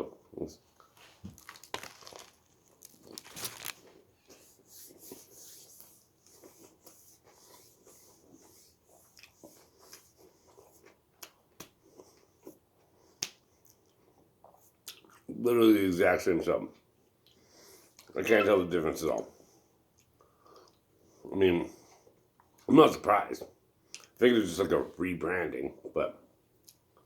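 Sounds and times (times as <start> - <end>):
soft rustles: 0.7 - 9.5
person chewing sandwich: 0.7 - 15.3.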